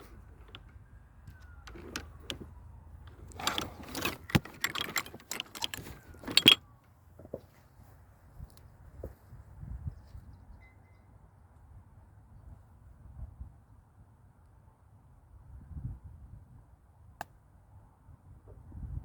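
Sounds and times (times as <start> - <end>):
clinking and rattling handling: 0.0 - 6.6
loud clatter: 3.1 - 6.6.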